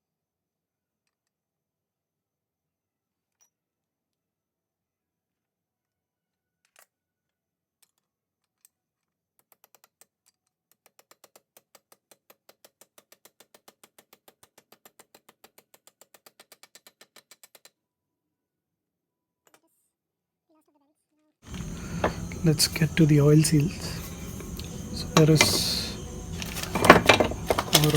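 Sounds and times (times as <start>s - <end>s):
rapid mechanical clicking: 21.5s - 27.9s.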